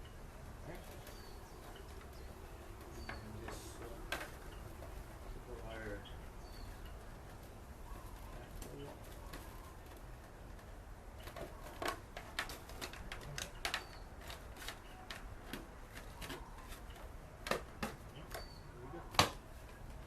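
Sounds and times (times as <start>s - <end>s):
plastic parts clicking and knocking: 2.8s - 5.0s, 9.3s - 20.0s.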